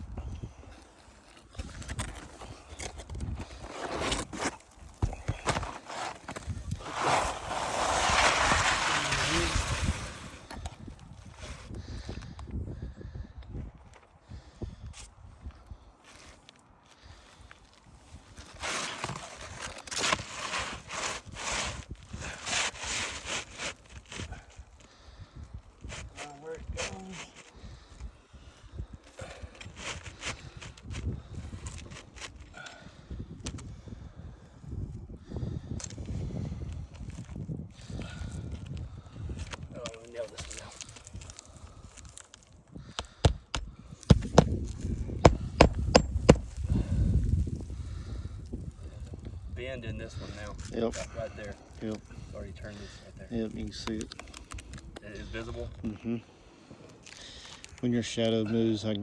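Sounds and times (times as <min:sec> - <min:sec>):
scraping on roof shingles: 0:01.8 - 0:10.4, 0:43.0 - 0:47.0.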